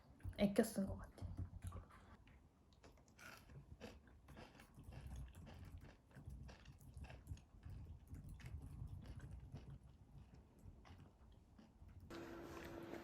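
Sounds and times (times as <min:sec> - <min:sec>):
person chewing crunchy cookie: 0:01.7 - 0:12.1.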